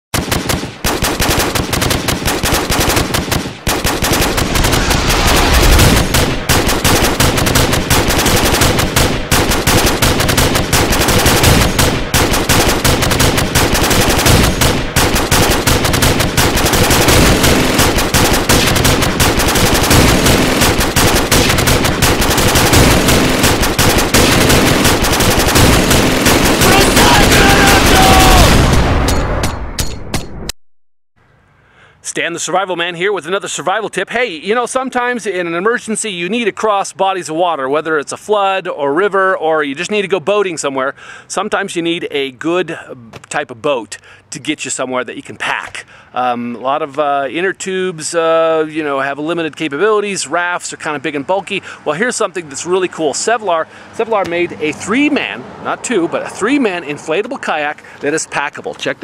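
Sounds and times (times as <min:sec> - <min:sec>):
rapid automatic gunfire: 0:00.2 - 0:28.8.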